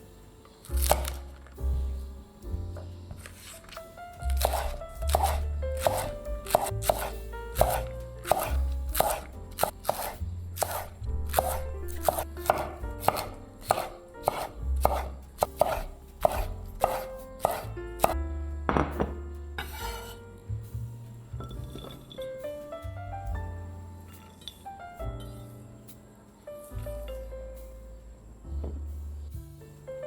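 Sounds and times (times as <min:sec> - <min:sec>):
background music: 0:00.0 - 0:30.0
knife chopping on cutting board: 0:00.7 - 0:01.2, 0:02.7 - 0:18.2, 0:19.0 - 0:20.2.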